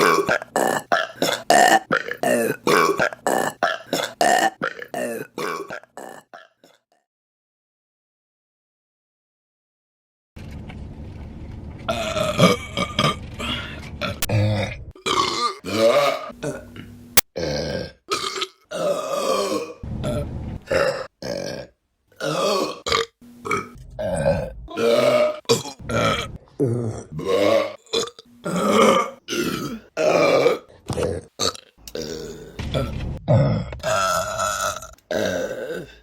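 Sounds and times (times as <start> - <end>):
women burping: 20.7 - 32.6, 33.2 - 36.0.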